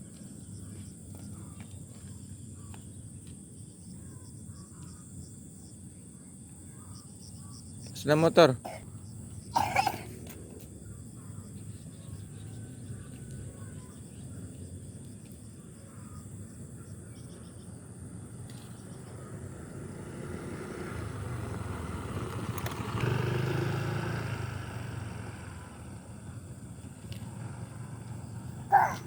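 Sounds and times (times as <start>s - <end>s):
motorbike passing by: 18.2s - 29.0s.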